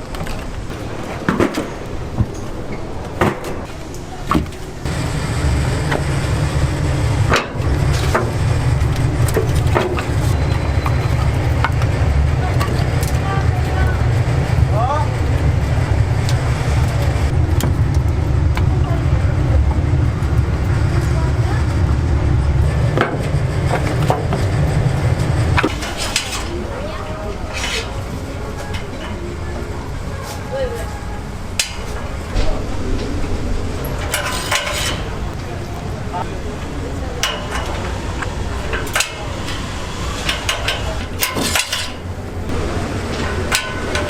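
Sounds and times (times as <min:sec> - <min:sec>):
steady low hum: 0:00.0 - 0:30.2, 0:30.9 - 0:44.0
low rumble: 0:04.8 - 0:26.7, 0:31.2 - 0:37.2
dishes and utensils clattering: 0:25.5 - 0:29.6, 0:33.8 - 0:35.4, 0:37.2 - 0:42.1, 0:43.0 - 0:44.0.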